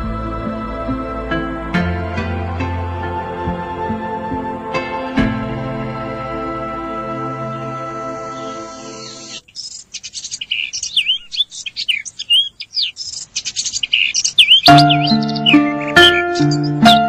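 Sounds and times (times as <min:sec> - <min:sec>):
background music: 0:00.0 - 0:09.4, 0:14.7 - 0:17.0
bird chirping and whistling: 0:08.4 - 0:17.0.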